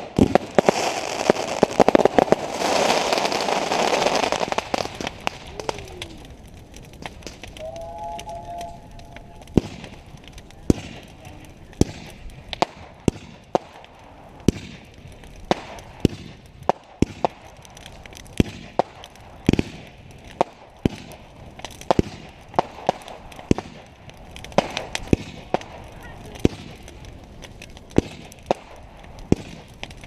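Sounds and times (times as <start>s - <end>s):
fireworks banging: 0.0s - 6.4s, 7.0s - 13.8s, 24.4s - 30.0s
fireworks crackle: 0.0s - 30.0s.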